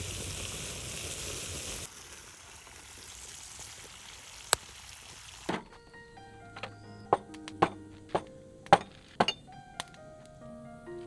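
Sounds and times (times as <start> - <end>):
shellfish sizzling in a can: 0.0 - 5.5
knock: 7.2 - 9.4.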